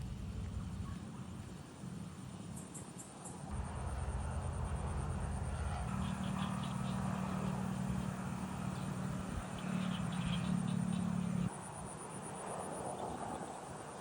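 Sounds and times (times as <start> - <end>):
low engine hum: 0.0 - 2.3, 3.5 - 11.6
high insect-like drone: 3.5 - 12.9.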